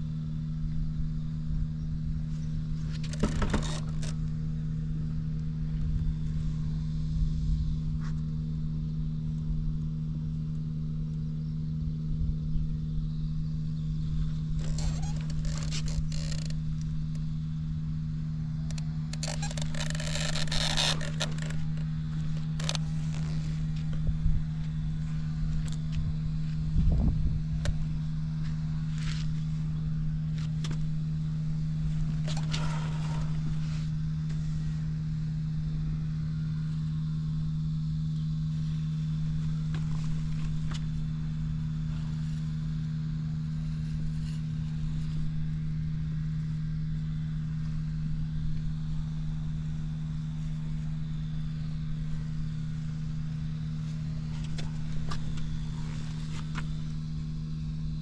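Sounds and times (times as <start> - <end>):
motorcycle engine idling: 0.0 - 58.0
brief engine knocks: 2.8 - 4.3.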